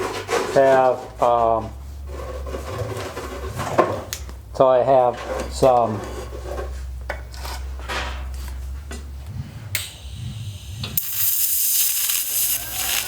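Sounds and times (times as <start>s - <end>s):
welding arc hissing: 9.8s - 13.0s.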